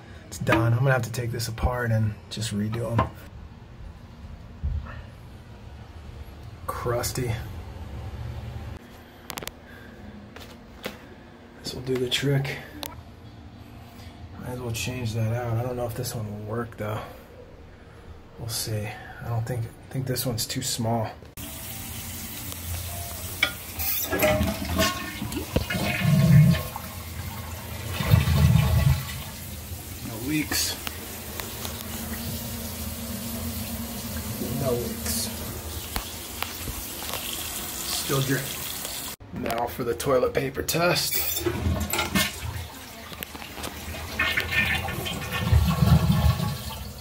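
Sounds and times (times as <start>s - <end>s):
toilet flushing and refilling: 21.4s - 39.2s, 41.4s - 47.0s.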